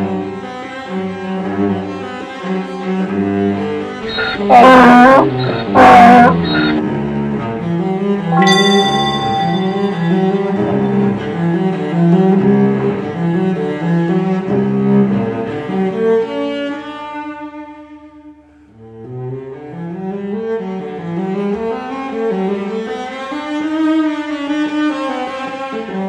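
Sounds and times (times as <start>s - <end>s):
low instrumental background music: 8.3s - 11.6s.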